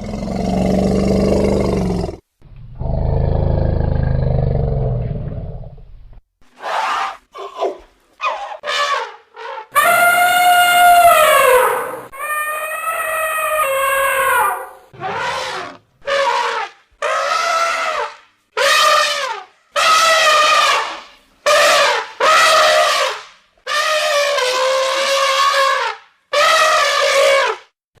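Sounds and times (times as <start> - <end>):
elephant trumpeting: 8.2 - 27.6.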